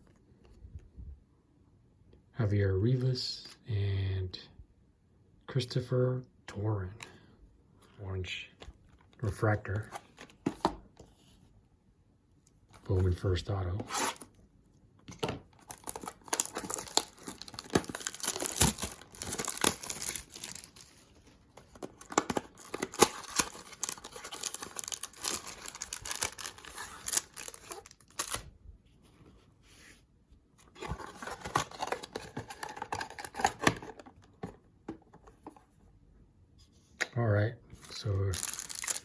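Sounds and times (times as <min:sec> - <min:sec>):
card wrappers tearing and crinkling: 0:15.6 - 0:28.5, 0:30.8 - 0:34.0, 0:38.0 - 0:39.0.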